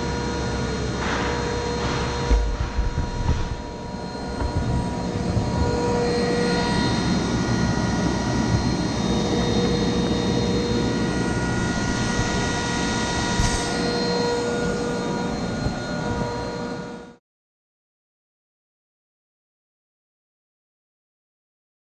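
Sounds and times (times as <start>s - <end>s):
machine drone with high whining: 0.0s - 17.2s.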